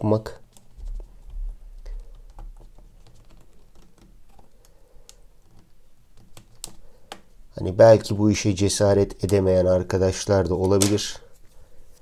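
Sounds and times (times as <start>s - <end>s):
plastic keyboard clicks and taps: 1.8s - 7.3s.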